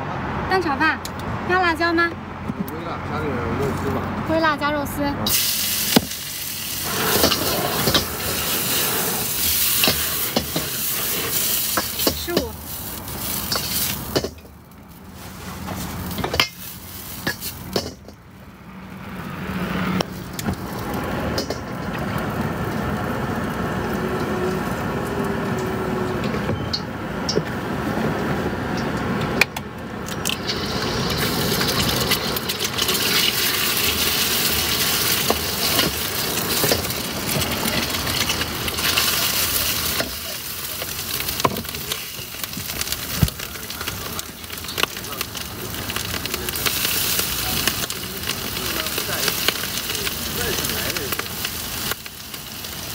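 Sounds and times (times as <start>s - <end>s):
rice sizzling in a wok: 5.3s - 18.1s, 19.0s - 26.2s, 30.2s - 52.9s
spatula scraping a wok: 6.6s - 14.4s, 15.0s - 18.0s.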